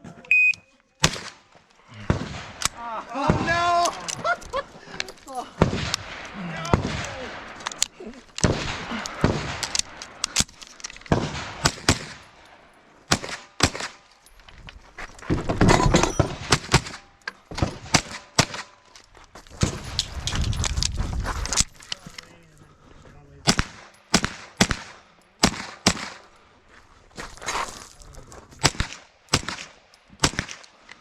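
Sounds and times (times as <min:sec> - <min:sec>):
rifle gunshots: 0:01.0 - 0:03.8, 0:05.6 - 0:07.6, 0:08.4 - 0:10.5, 0:11.1 - 0:12.4, 0:13.1 - 0:14.0, 0:23.4 - 0:26.2, 0:28.6 - 0:30.7.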